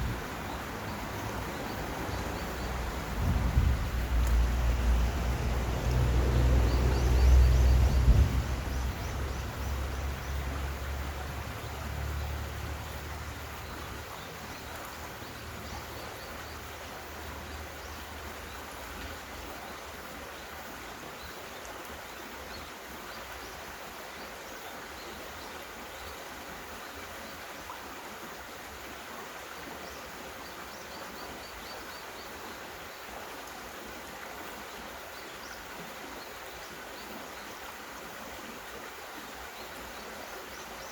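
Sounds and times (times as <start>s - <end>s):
mountain stream rushing: 0.0s - 40.9s
thunder rumbling: 3.0s - 8.8s.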